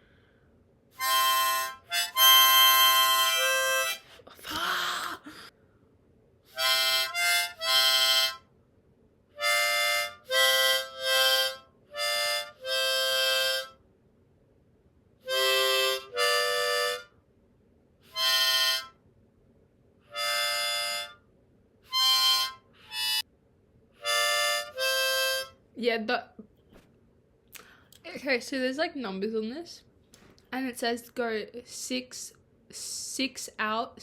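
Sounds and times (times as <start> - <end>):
harmonica notes: 1.0 - 4.2, 6.5 - 8.5, 9.4 - 13.8, 15.2 - 17.2, 18.0 - 19.0, 20.1 - 21.3, 21.9 - 23.2, 24.0 - 25.6.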